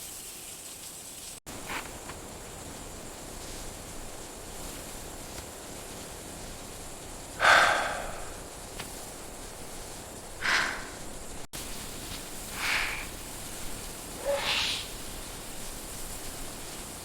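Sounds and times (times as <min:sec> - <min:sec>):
steady hiss: 0:00.0 - 0:17.0
elephant snorting: 0:07.4 - 0:08.6, 0:10.4 - 0:11.5, 0:12.3 - 0:15.2.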